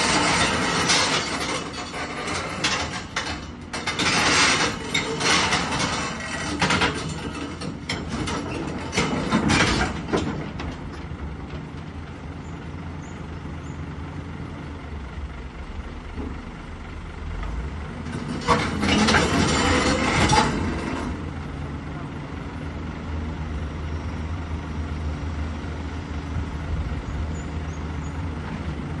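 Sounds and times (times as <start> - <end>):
steel tracks clanking and grinding: 0.0 - 22.7
excavator diesel engine running: 0.0 - 29.0.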